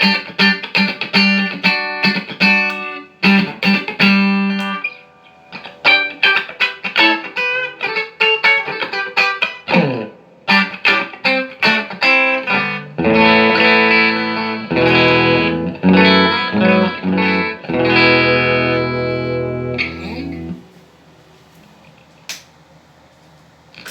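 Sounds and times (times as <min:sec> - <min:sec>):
electric guitar notes and chords: 0:00.0 - 0:20.7.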